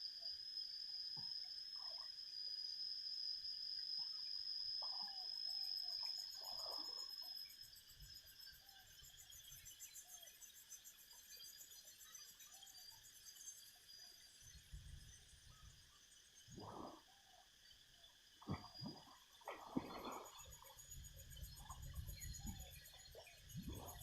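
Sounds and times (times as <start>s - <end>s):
insect high-pitched whine: 0.0s - 24.0s
insect pulsing high trill: 0.0s - 24.0s.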